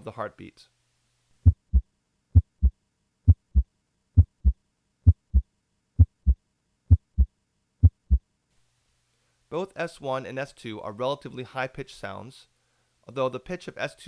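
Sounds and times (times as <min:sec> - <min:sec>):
heartbeat lub-dub: 0:01.4 - 0:08.2.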